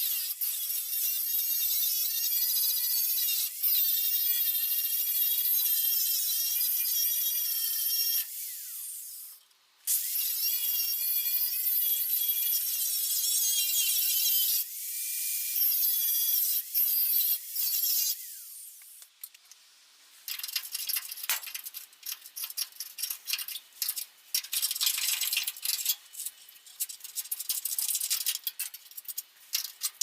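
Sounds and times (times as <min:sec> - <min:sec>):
angle grinder on metal: 0:00.0 - 0:19.0.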